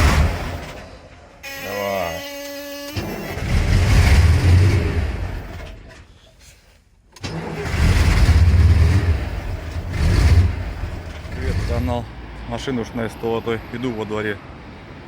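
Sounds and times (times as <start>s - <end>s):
vehicle engine revving: 3.3s - 5.7s, 7.3s - 12.1s.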